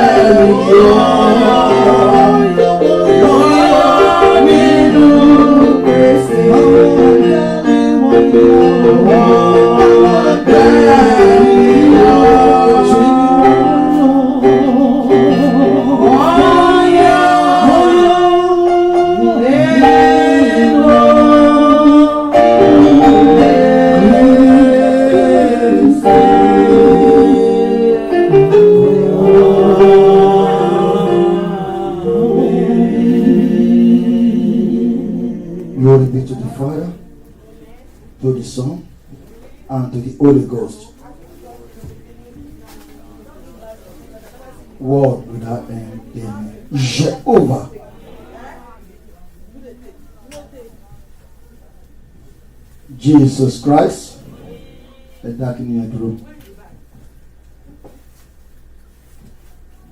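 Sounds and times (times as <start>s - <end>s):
group singing gospel song: 0.0s - 37.2s
instrumental accompaniment: 0.0s - 37.5s.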